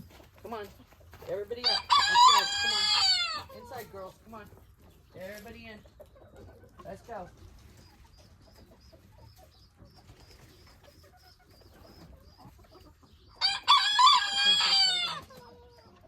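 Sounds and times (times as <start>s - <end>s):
faint farmyard sounds: 0.0s - 16.0s
rooster crowing: 1.6s - 3.5s, 13.4s - 15.3s.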